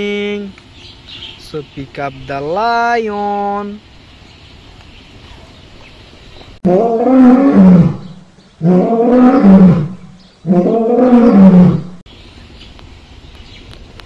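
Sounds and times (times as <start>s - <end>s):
lion roar: 6.6s - 12.0s.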